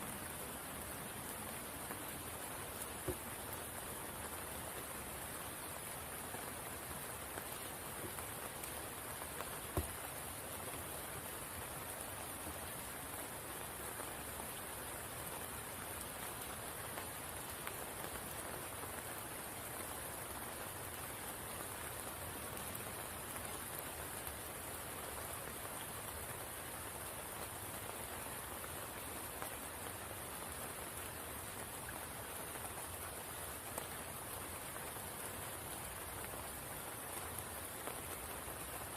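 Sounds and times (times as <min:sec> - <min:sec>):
rain falling on water: 0:00.0 - 0:38.9
sharp tap: 0:03.0 - 0:03.3.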